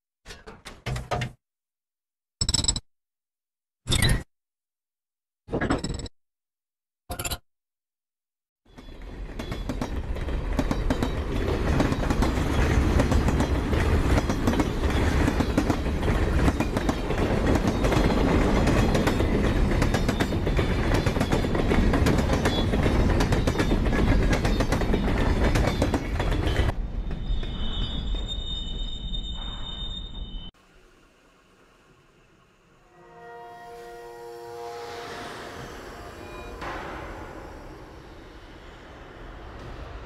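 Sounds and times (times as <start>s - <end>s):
train wheels clattering on rails: 8.7s - 27.9s.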